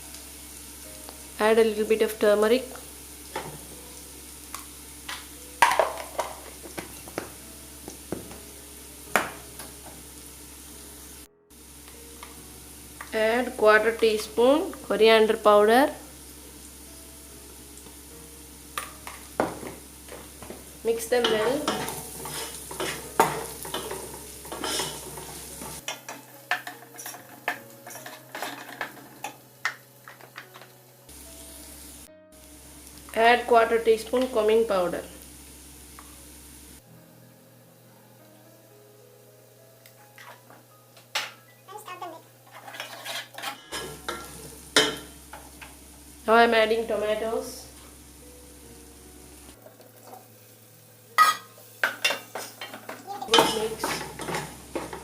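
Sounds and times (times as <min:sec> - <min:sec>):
onions sizzling in oil: 0:00.0 - 0:36.8, 0:39.2 - 0:55.0
spoon scraping a pan: 0:21.2 - 0:30.7, 0:42.4 - 0:45.8, 0:51.2 - 0:55.0
spoon clinking against pan: 0:51.2 - 0:54.9.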